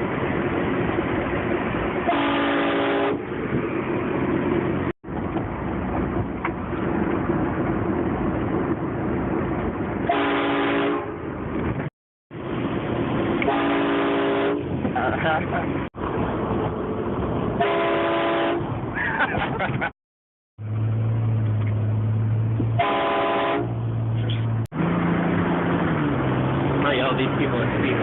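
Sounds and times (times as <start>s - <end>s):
vehicle noise: 0.0s - 19.9s, 20.6s - 28.0s
train horn blasting: 2.1s - 3.2s, 10.1s - 11.2s, 13.4s - 14.7s, 17.6s - 18.6s, 22.8s - 23.7s.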